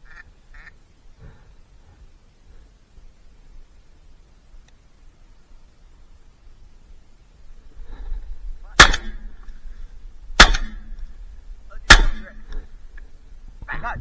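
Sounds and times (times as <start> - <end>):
shotgun shots: 8.7 - 9.4, 10.4 - 11.0, 11.8 - 12.6.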